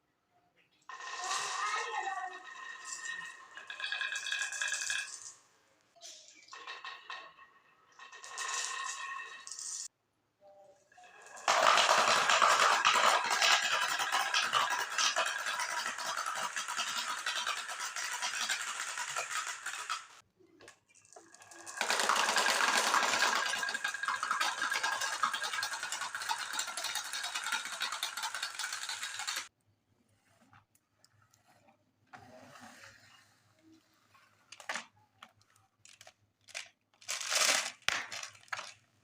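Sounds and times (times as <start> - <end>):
marbles rattling down tracks: 0.9 - 5.4, 6.4 - 9.9, 11.0 - 20.2, 21.0 - 29.5, 35.9 - 38.8.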